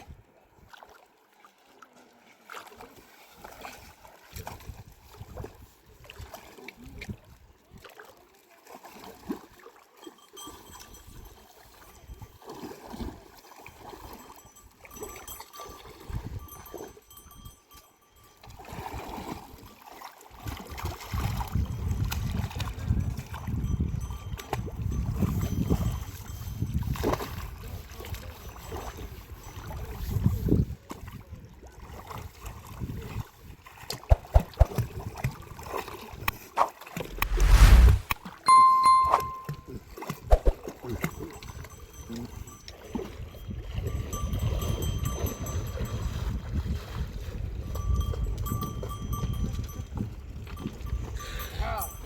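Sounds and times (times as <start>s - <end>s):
river water splashing: 0.7s - 4.6s, 12.4s - 16.0s
low rumble: 37.1s - 38.2s.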